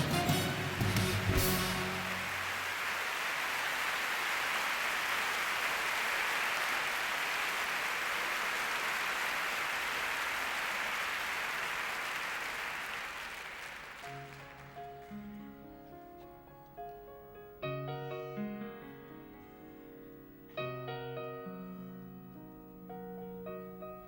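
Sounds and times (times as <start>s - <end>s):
audience applauding: 0.0s - 15.3s
soft piano notes: 14.1s - 24.0s.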